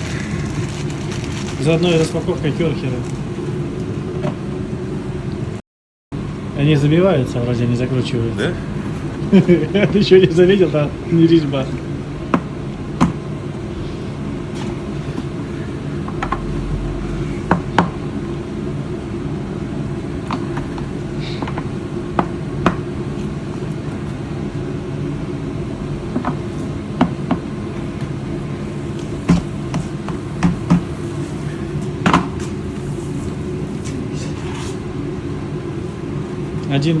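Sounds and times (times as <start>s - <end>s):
steady low drone: 6.2s - 26.1s.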